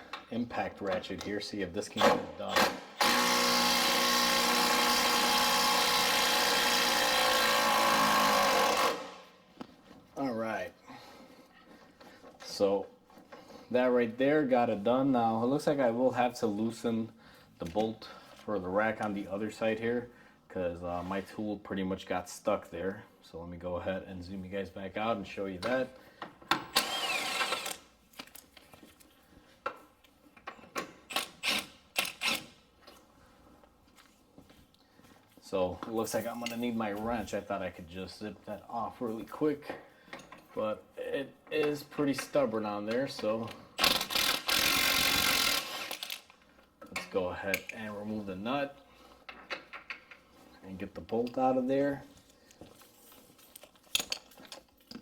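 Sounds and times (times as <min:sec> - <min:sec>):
impact ratchet motor running: 0:43.8 - 0:46.2
hand tools clicking and knocking: 0:49.2 - 0:50.2, 0:53.5 - 0:55.0.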